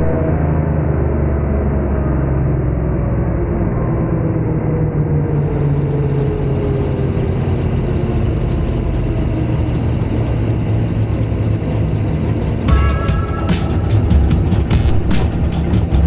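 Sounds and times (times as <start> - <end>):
race car engine rumbling: 6.5 - 16.0
music: 12.7 - 16.0.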